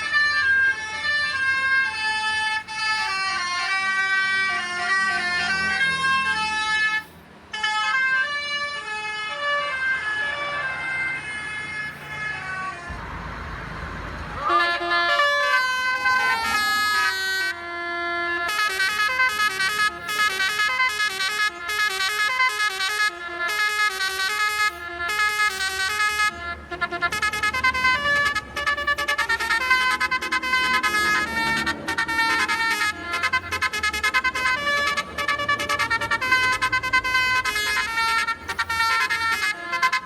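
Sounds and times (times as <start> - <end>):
multi-tone bus horns playing melodies: 0.0 - 40.0
rushing noise: 10.0 - 17.6.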